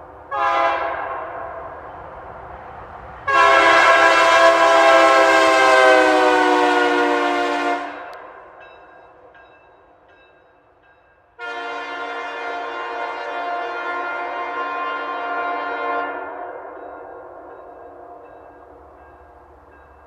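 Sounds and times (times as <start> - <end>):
locomotive air horn blasts: 0.3 - 1.4, 3.3 - 8.2, 11.4 - 16.6.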